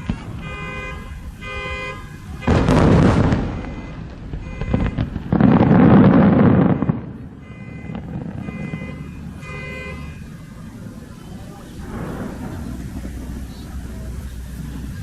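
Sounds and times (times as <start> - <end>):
firework shells bursting: 0.0 - 10.2
firework crackle: 0.0 - 15.0.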